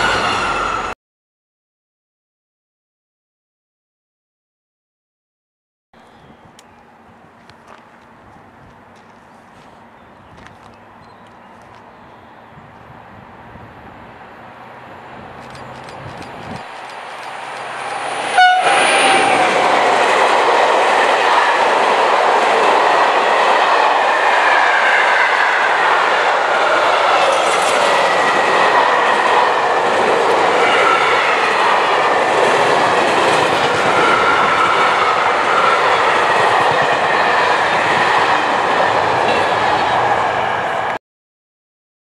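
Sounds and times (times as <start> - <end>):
train wheels rushing on rails: 14.5 - 41.0.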